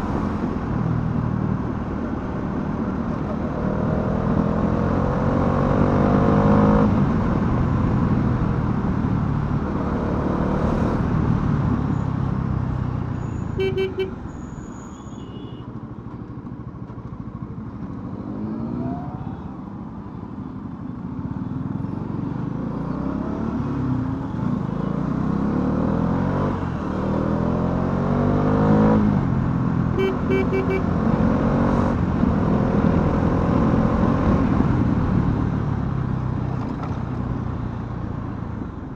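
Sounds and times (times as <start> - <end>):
short horn beeps: 13.2 - 15.7, 30.0 - 30.9
motorcycle engine revving: 30.0 - 34.8.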